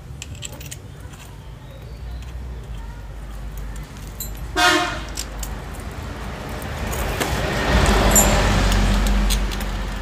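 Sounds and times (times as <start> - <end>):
vehicle passing by: 5.6 - 10.0.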